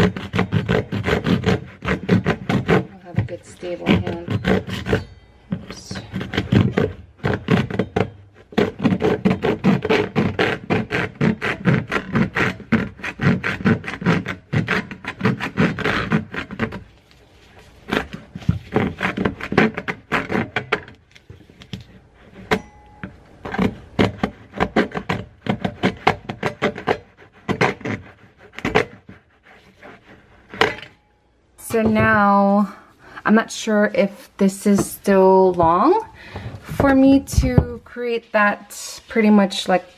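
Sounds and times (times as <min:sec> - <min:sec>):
saw rasping through plastic pipe: 0:00.0 - 0:31.0.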